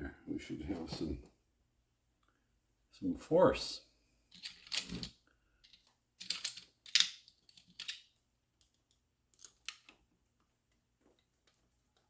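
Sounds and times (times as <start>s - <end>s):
clattering pump parts and tools: 4.3s - 8.1s.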